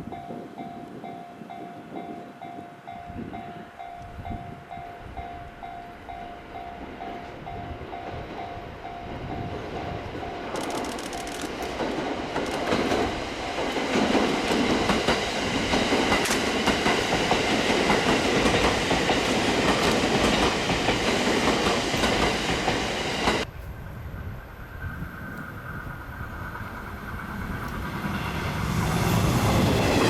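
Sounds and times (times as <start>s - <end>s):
train wheels clattering over rail joints: 10.5s - 23.4s.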